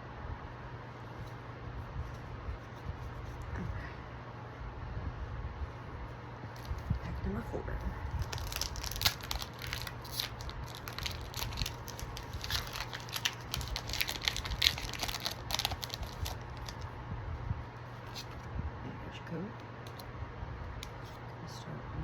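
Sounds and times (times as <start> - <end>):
foil wrapper crinkling and tearing: 6.6 - 7.0, 8.0 - 16.9.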